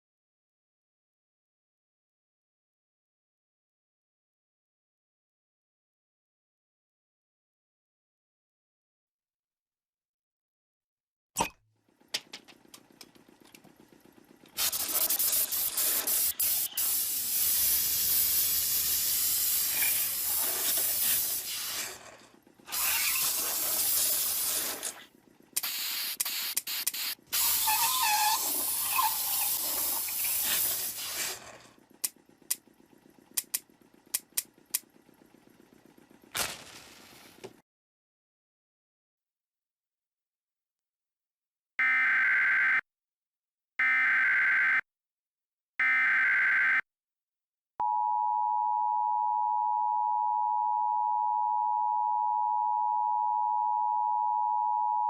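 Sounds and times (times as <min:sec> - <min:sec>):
clicks: 0:33.3 - 0:34.9.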